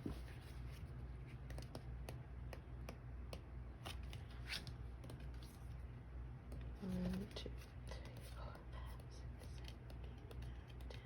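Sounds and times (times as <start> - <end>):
low steady hum: 0.0 - 11.0
postcards clicking and tapping: 1.3 - 5.6, 6.5 - 11.0.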